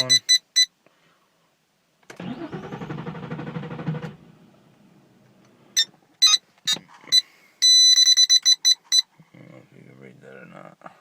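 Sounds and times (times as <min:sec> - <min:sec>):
dashboard warning beeps: 0:00.0 - 0:00.7, 0:05.8 - 0:09.1
car engine cranking on starter: 0:02.0 - 0:05.5.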